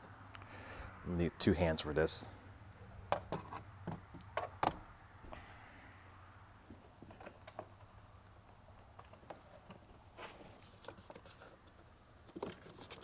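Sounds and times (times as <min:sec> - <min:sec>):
faint rustle: 0:06.7 - 0:13.0.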